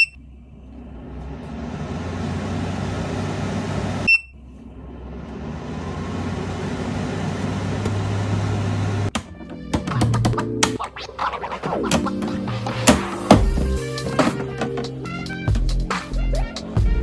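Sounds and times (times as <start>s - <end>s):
control panel beep: 4.1s - 4.4s
pet dryer blower humming: 5.0s - 9.1s.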